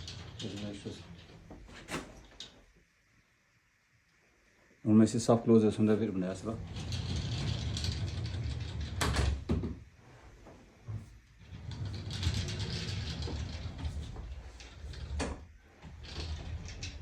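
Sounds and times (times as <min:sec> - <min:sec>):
sliding doors rumbling on tracks: 0:06.4 - 0:09.4, 0:11.4 - 0:17.0.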